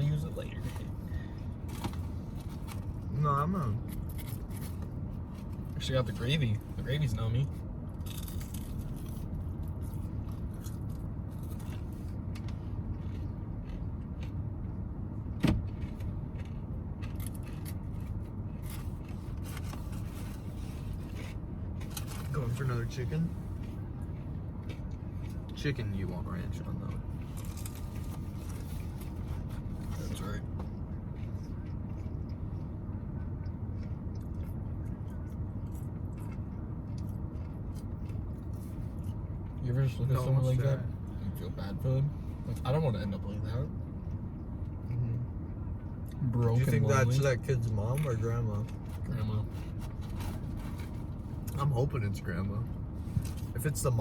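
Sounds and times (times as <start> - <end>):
car cabin rumble: 0.0 - 54.0
steady low hum: 0.0 - 54.0
close-up chewing: 7.9 - 14.8, 15.7 - 22.3, 26.8 - 39.6.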